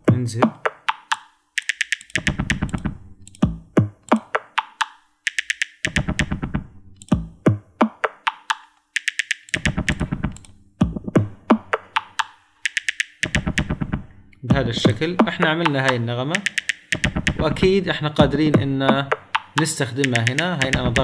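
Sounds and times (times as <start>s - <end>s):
electronic kick drum hits: 3.4s - 3.9s, 6.0s - 8.2s, 9.7s - 12.2s, 13.2s - 15.6s, 17.0s - 19.5s.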